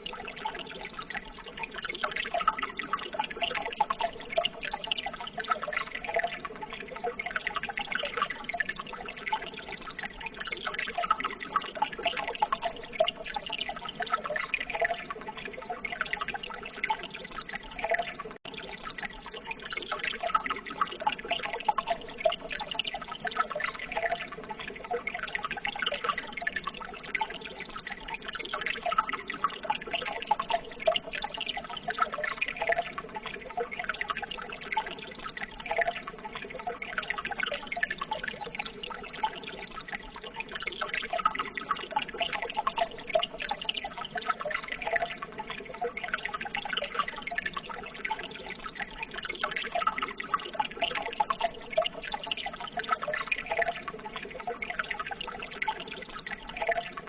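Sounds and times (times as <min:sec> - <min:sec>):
water trickling and burbling: 0:00.0 - 0:57.0.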